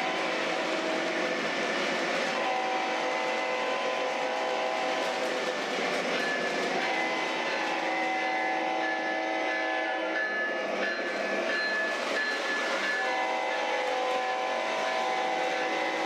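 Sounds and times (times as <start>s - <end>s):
multi-tone locomotive horn: 0.0s - 1.6s, 2.2s - 5.4s, 6.6s - 10.6s, 12.5s - 16.0s
diesel locomotive running sounds: 0.0s - 16.0s.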